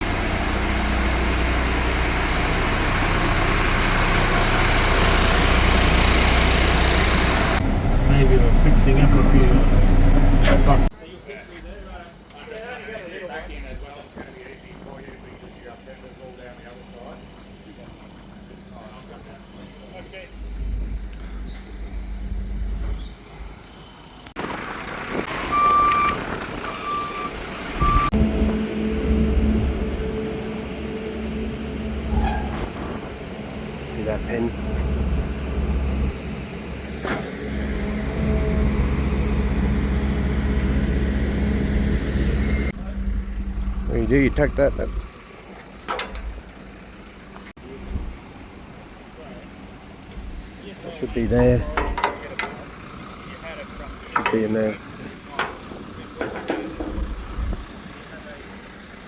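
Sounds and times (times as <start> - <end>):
diesel engine running: 0.0 - 10.9, 16.9 - 59.0
machinery noise: 0.0 - 10.9, 24.4 - 49.8, 50.9 - 59.0
reversing alarm beeping: 25.4 - 36.6.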